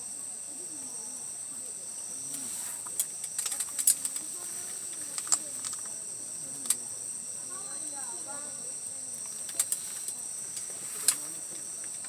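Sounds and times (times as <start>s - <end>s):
high chirring of insects: 0.0s - 12.0s
campfire wood crackling: 2.3s - 7.0s, 9.2s - 12.0s.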